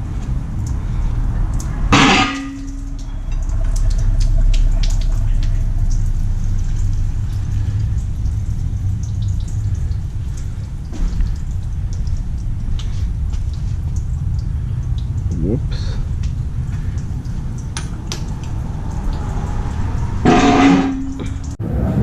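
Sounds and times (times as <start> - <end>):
steady low rumble: 0.0 - 22.0
loud metallic clank: 1.9 - 2.9, 20.2 - 21.4
small clicks and taps: 16.2 - 19.2.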